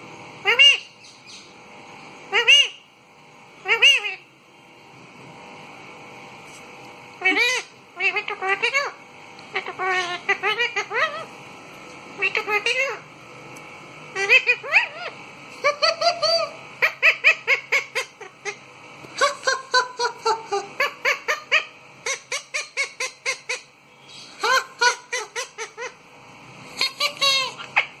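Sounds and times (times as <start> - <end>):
parakeet squawking: 0.4 - 1.5, 2.3 - 2.8, 3.6 - 4.3, 7.2 - 11.3, 12.2 - 13.1, 14.1 - 18.6, 19.2 - 26.0, 26.7 - 28.0.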